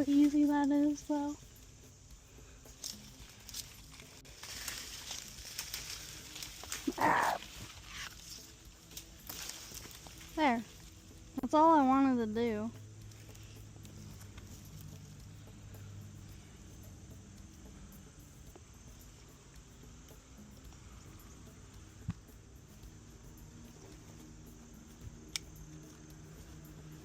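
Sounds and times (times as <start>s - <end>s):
faint low hum: 0.0s - 27.0s
insects chirping: 0.0s - 27.0s.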